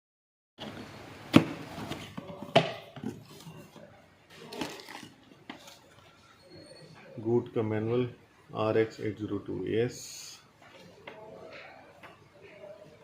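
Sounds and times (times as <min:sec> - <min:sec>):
packaging rustling: 0:04.3 - 0:05.9.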